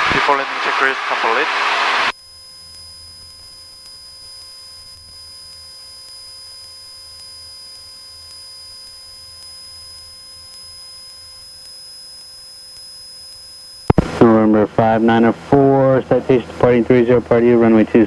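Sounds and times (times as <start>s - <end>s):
faint low pulsing: 0.0s - 2.1s
electrical hum: 0.0s - 18.0s
thin high whine: 0.0s - 18.0s.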